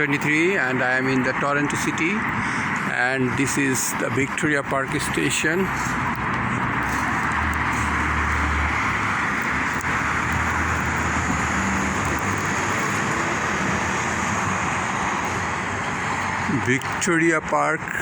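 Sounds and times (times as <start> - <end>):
road traffic passing: 0.0 - 18.0
low engine hum: 4.0 - 17.0.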